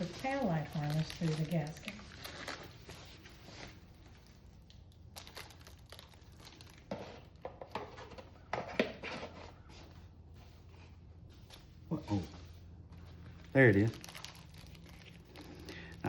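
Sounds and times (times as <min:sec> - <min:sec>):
plastic crinkling: 0:00.0 - 0:08.4, 0:13.2 - 0:16.0.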